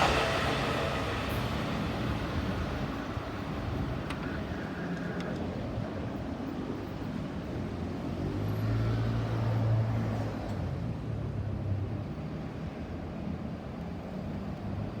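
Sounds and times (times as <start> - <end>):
passing vehicle hum: 0.0 - 5.6
traffic noise: 0.0 - 15.0.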